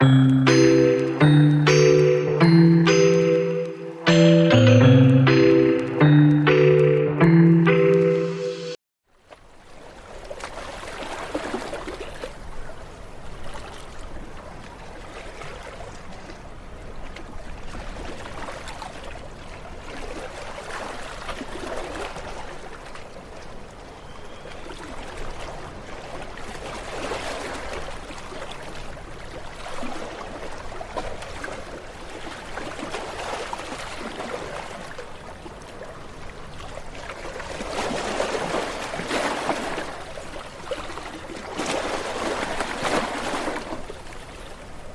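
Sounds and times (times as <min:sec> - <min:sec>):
ocean waves breaking on shore: 0:13.2 - 0:44.9.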